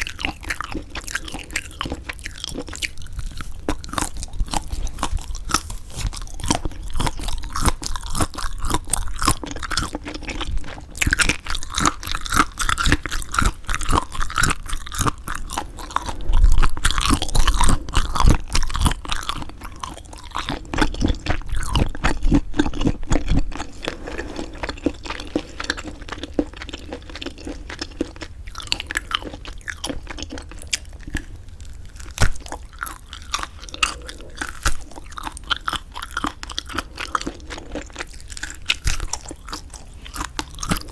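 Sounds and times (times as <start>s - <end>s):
wet crackly chewing: 0.0s - 40.9s.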